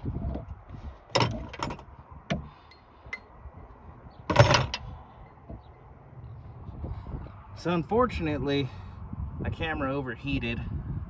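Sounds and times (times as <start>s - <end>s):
metal tools clanking on metal: 1.1s - 3.3s, 4.3s - 5.4s.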